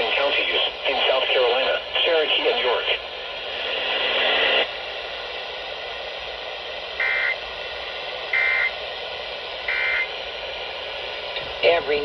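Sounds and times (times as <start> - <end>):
radio static hiss: 0.0 - 12.0
warbling data bursts: 7.0 - 7.4, 8.3 - 8.7, 9.7 - 10.1.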